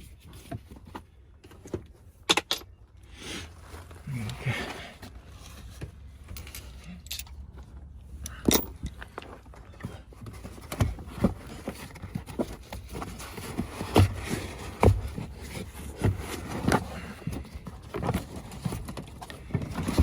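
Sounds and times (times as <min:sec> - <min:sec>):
coins and debris clicking and scraping: 0:06.3 - 0:07.4.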